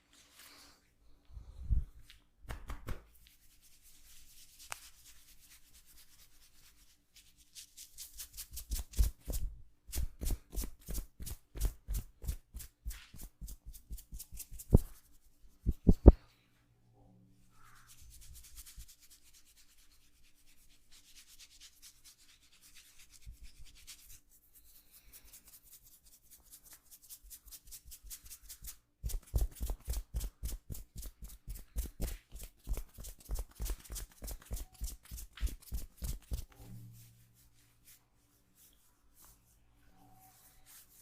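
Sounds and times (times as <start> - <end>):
hands rubbing skin: 2.0 - 16.2, 17.6 - 36.6, 37.4 - 39.6, 40.4 - 41.0.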